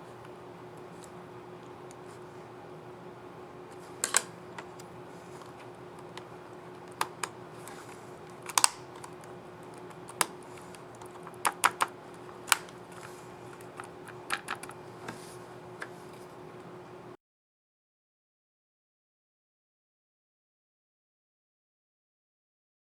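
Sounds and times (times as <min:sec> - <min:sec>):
faint hum: 0:00.0 - 0:17.2
laptop keys clicking: 0:03.9 - 0:14.8.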